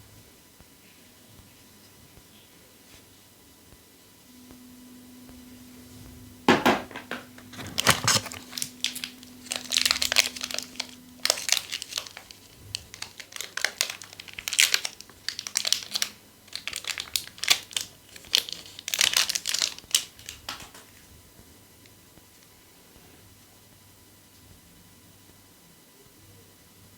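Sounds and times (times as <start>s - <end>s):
plastic packaging crinkling and tearing: 6.9s - 21.0s.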